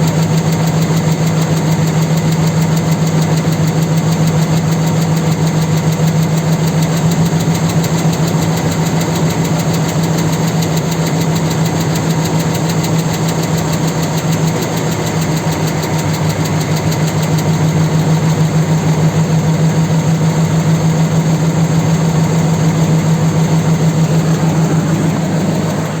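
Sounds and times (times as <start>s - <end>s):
engine idling: 0.0s - 26.0s
rhythmic engine knock: 0.0s - 26.0s.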